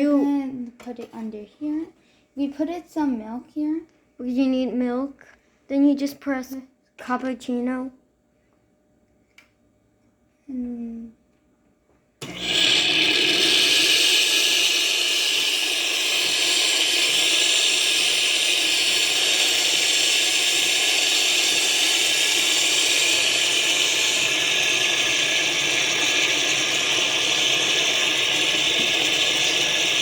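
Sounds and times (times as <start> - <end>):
espresso machine steaming milk: 12.2 - 30.0.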